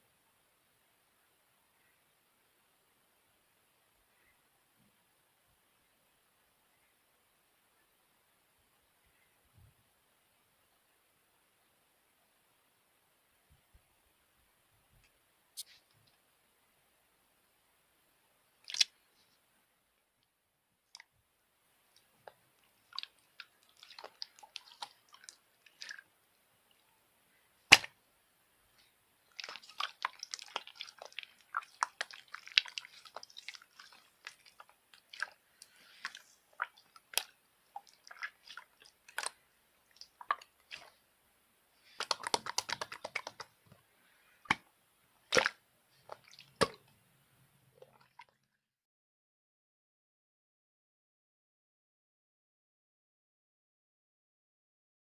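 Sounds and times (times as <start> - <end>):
crackling and clicking: 41.9 - 43.8.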